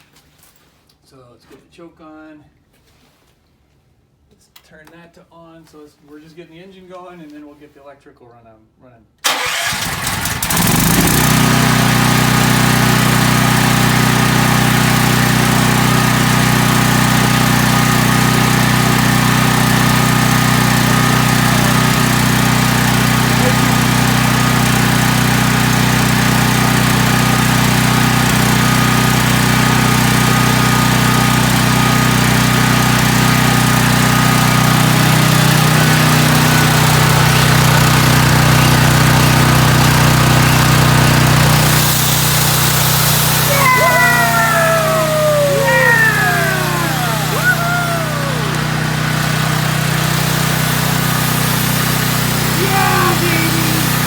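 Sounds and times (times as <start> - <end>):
portable generator engine running: 9.3 - 27.0, 40.1 - 54.0.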